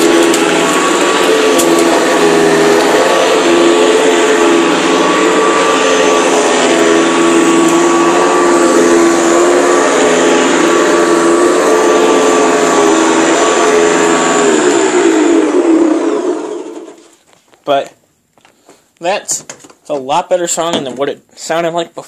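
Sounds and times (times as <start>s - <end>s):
upright vacuum cleaner running: 0.0s - 17.2s.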